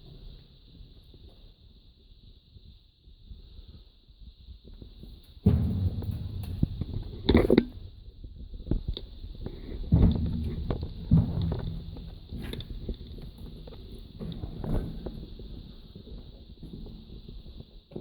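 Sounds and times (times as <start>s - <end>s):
heavy handling thuds: 5.4s - 8.2s, 9.3s - 15.5s.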